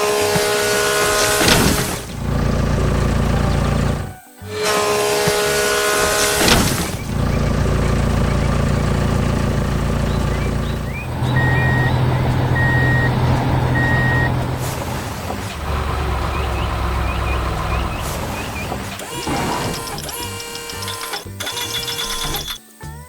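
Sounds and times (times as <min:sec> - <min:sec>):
loud hiss: 0:00.0 - 0:12.6, 0:13.2 - 0:21.4
heavy truck engine running: 0:00.0 - 0:22.6
reversing beeps: 0:10.1 - 0:14.4.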